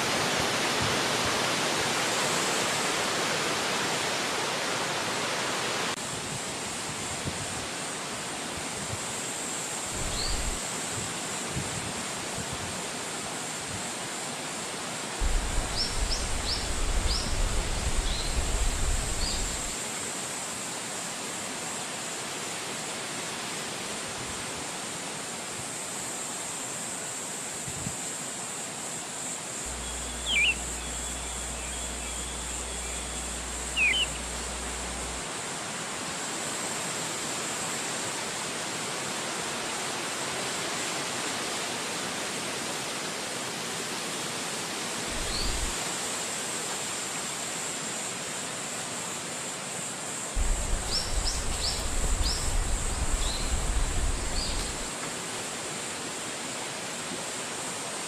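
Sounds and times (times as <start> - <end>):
wind rushing through trees: 0.0 - 58.0
bird chirps: 29.7 - 35.2.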